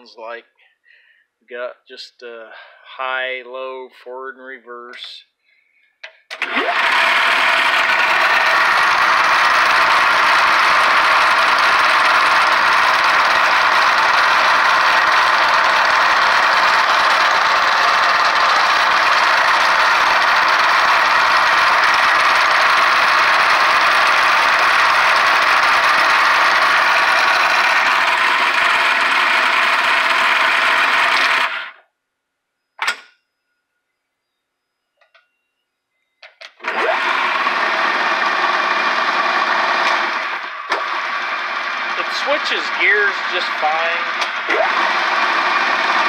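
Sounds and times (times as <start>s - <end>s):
lathe whirring and rattling: 6.3s - 31.8s, 36.6s - 46.0s.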